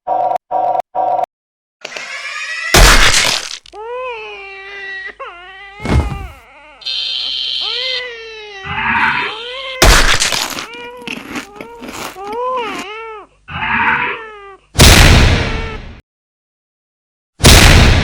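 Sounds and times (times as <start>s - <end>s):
cartoon wailing cries: 1.9s - 3.0s, 3.8s - 14.6s
high electronic tone: 6.8s - 7.7s.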